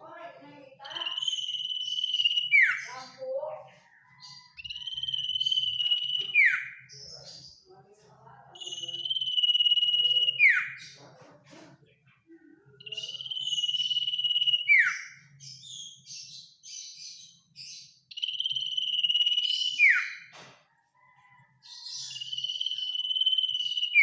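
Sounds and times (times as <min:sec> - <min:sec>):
bird chattering notes: 0:00.0 - 0:03.6, 0:04.2 - 0:07.6, 0:08.6 - 0:11.0, 0:12.7 - 0:20.1, 0:21.8 - 0:24.0
bird whistling: 0:00.8 - 0:03.4, 0:04.1 - 0:06.9, 0:08.6 - 0:10.8, 0:12.8 - 0:20.3, 0:21.8 - 0:24.0.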